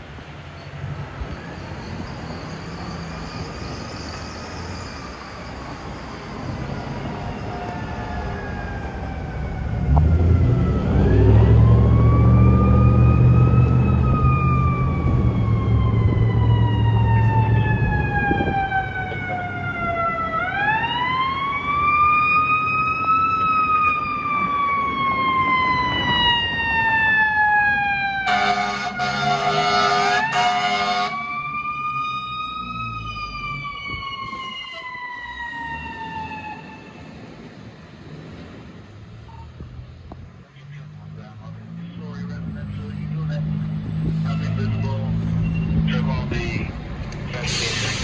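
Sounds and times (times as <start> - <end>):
fire truck siren wailing: 1.2 - 40.0, 42.0 - 48.0
air horn blasts: 28.3 - 31.3
heavy engine rumble: 37.2 - 48.0.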